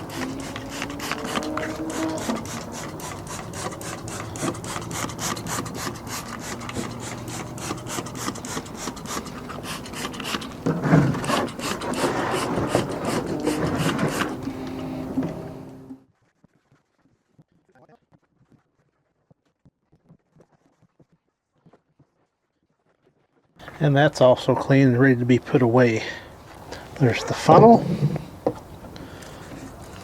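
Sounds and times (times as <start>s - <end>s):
brush scrubbing a tool: 0.0s - 17.4s, 27.0s - 28.4s.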